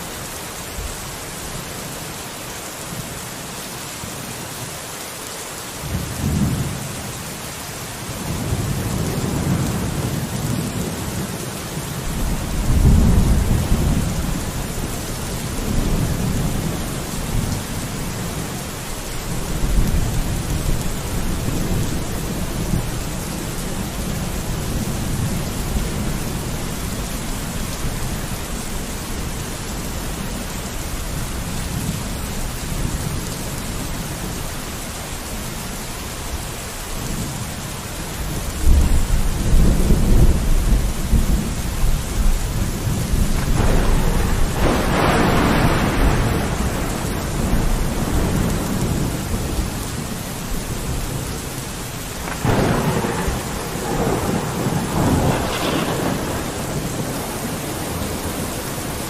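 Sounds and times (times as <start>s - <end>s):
steady rain: 0.0s - 59.0s
rolling thunder: 8.2s - 18.6s, 38.2s - 51.2s, 51.9s - 59.0s.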